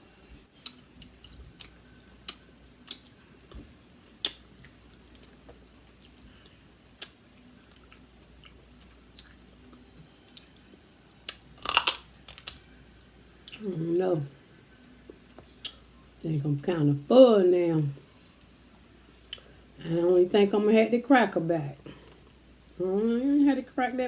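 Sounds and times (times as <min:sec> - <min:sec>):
person chewing food: 0:00.6 - 0:03.3, 0:04.2 - 0:10.7, 0:11.3 - 0:12.6.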